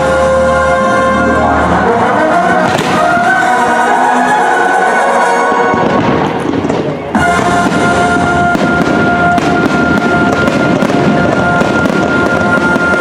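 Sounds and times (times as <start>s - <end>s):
loud show music: 0.0s - 13.0s
fireworks crackling and popping: 2.6s - 4.1s, 5.6s - 13.0s.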